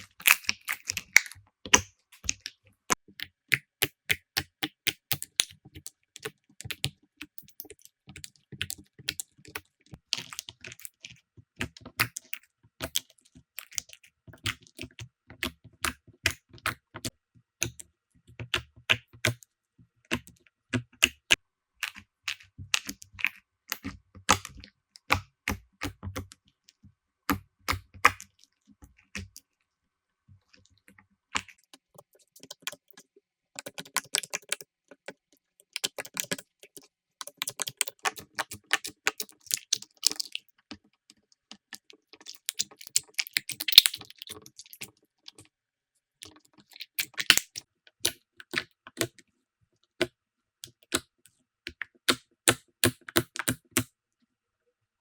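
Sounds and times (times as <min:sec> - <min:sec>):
slime squeezed with clicks and pops: 0:00.0 - 0:02.5, 0:42.2 - 0:44.9, 0:51.7 - 0:53.9.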